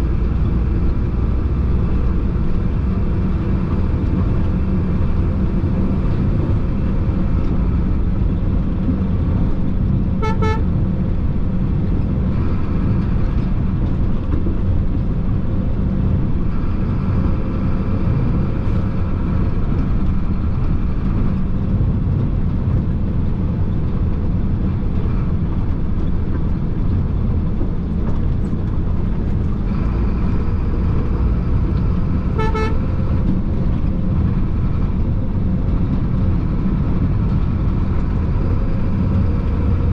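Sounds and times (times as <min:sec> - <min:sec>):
diesel truck engine running: 0:00.0 - 0:39.9
road noise: 0:00.0 - 0:39.9
vehicle horn toots: 0:10.2 - 0:10.7, 0:32.3 - 0:32.9.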